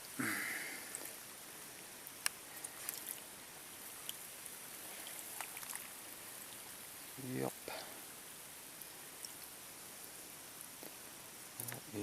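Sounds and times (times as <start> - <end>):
water dripping and trickling: 0.0 - 12.0
small ticks: 2.0 - 3.3, 8.8 - 10.2, 11.6 - 11.9.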